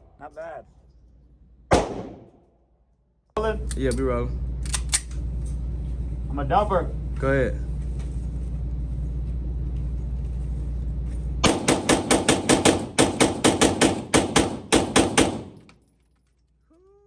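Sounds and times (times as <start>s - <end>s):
steady low rumble: 0.0s - 15.6s
rapid gunfire: 11.4s - 15.6s.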